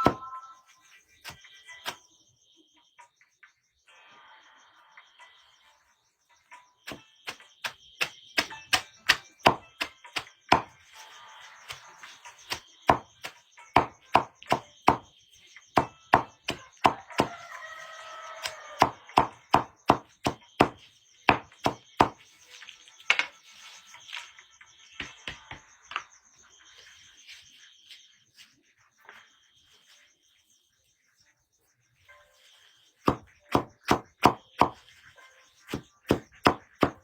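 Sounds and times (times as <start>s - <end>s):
blade chopping wood: 6.9s - 10.8s, 11.7s - 15.1s, 15.8s - 17.5s, 18.4s - 22.2s, 33.0s - 34.9s, 35.7s - 37.0s.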